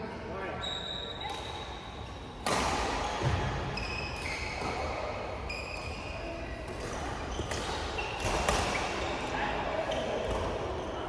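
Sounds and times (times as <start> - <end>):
shoes squeaking on court floor: 3.0 - 11.0.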